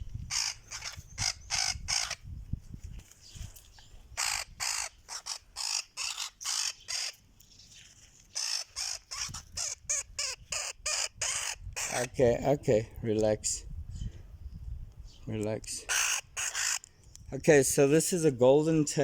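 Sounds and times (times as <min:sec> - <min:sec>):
woodpecker harsh rasping squawks: 0:00.2 - 0:02.2, 0:04.1 - 0:07.2, 0:08.2 - 0:12.2, 0:15.9 - 0:17.0.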